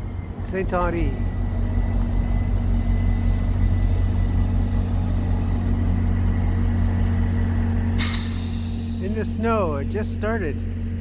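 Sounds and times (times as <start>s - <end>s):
diesel locomotive engine hum: 0.0s - 11.0s
faint high whine: 8.0s - 9.4s.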